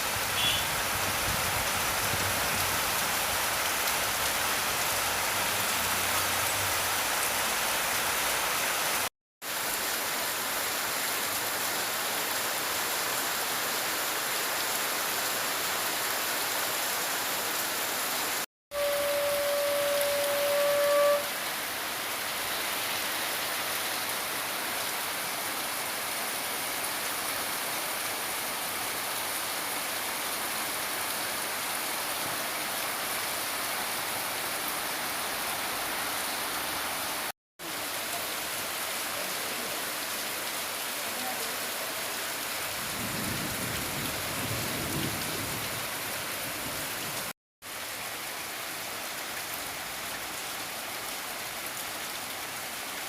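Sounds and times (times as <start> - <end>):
rain pattering on surfaces: 0.1 - 18.4, 36.6 - 53.0.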